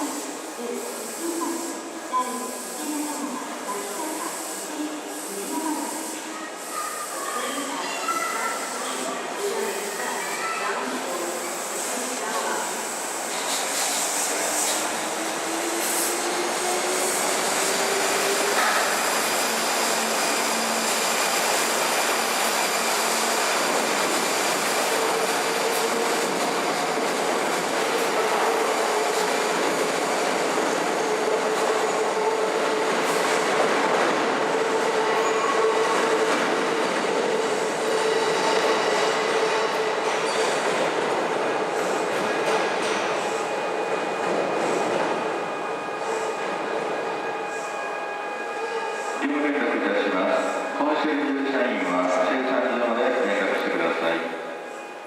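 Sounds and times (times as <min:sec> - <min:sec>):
train running noise: 0:00.0 - 0:55.0.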